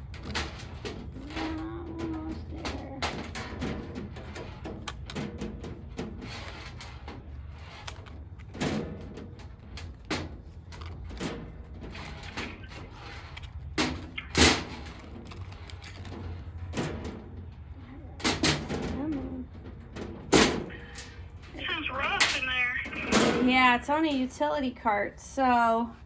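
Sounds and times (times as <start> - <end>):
cart rattling: 0.0 - 24.2.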